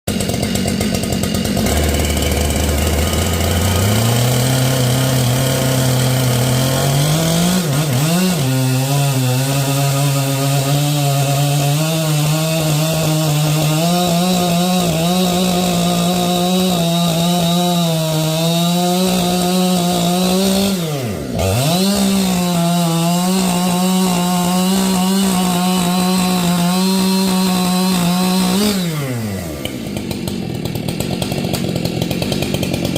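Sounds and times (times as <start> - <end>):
chainsaw cutting log: 0.1 - 32.9.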